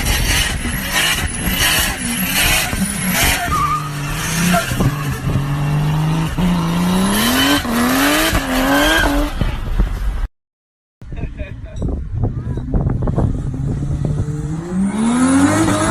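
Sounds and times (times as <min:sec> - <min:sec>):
car engine revving through upshifts: 0:00.0 - 0:09.4, 0:13.5 - 0:15.9.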